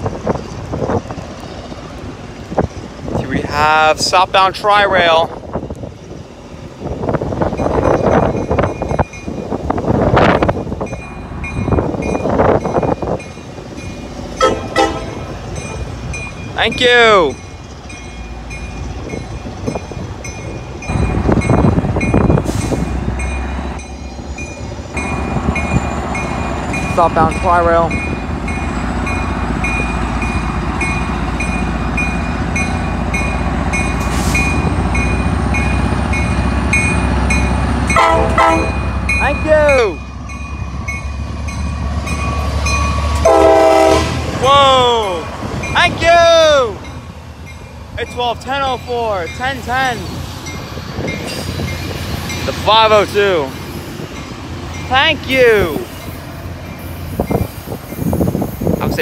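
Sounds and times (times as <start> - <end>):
train rumbling past: 0.0 - 59.0
gusty rushing noise: 5.2 - 16.6, 43.9 - 59.0
train horn blasts: 14.4 - 15.4, 37.9 - 38.9, 43.2 - 44.3.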